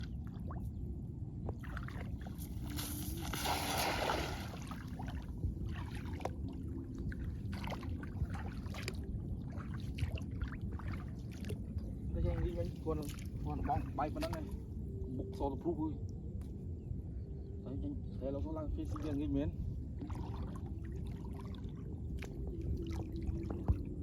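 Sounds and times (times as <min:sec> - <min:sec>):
low rumble: 0:00.0 - 0:24.0
water splashing around boat: 0:01.4 - 0:14.7, 0:18.8 - 0:24.0.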